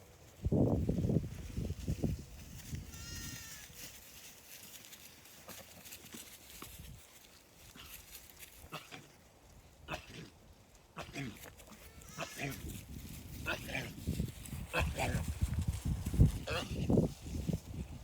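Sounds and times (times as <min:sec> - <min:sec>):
faint clicks and rustles: 0:01.3 - 0:09.7
lamb bleating: 0:02.9 - 0:03.8, 0:11.0 - 0:12.7, 0:16.4 - 0:16.8.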